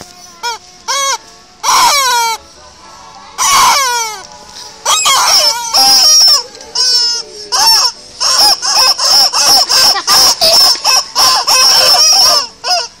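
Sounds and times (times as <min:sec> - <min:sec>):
high-pitched whine: 0:00.0 - 0:12.6
laughing sound effect: 0:04.8 - 0:12.9.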